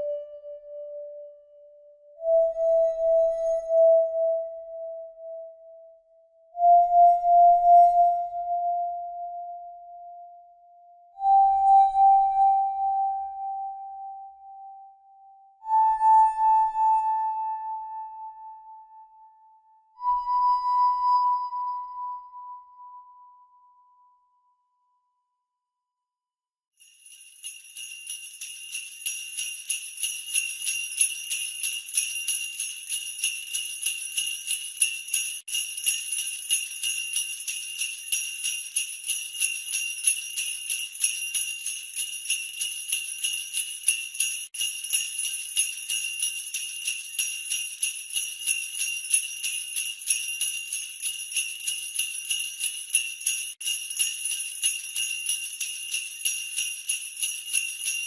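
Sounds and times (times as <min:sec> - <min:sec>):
jingle bells shaken: 0:26.8 - 0:58.0.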